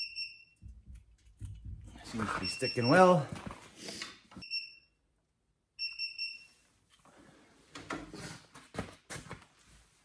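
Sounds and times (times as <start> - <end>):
short electronic beeps: 2.4 - 3.2.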